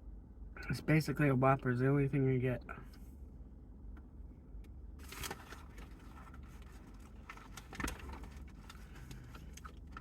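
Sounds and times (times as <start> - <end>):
low steady hum: 0.0 - 10.0
paper wrapper rustle: 5.0 - 10.0.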